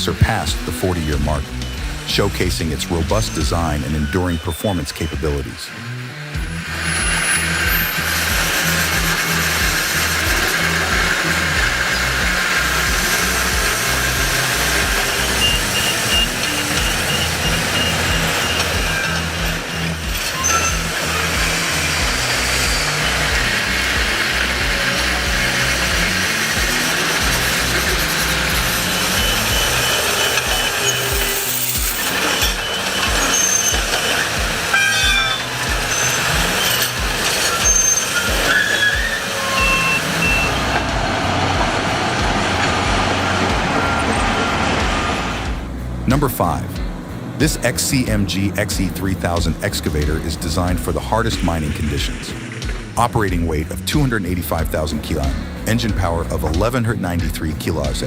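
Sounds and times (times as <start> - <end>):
heavy machinery running: 0.0 - 58.0
warning alarm beeps: 0.6 - 5.6, 14.2 - 20.9, 28.2 - 36.9, 37.5 - 40.8
short high tones: 0.7 - 5.8, 13.8 - 23.8, 26.5 - 45.4.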